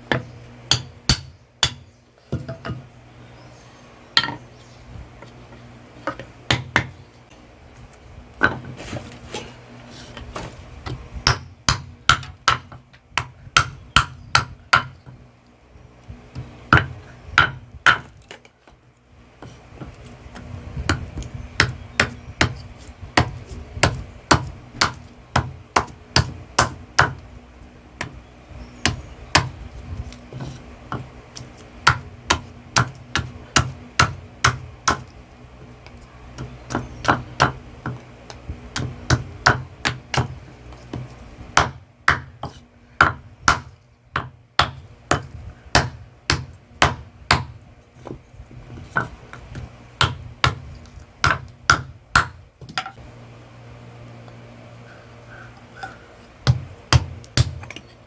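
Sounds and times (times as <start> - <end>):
faint steady hum: 0.0 - 58.0
hammer striking metal anvil: 0.7 - 2.8.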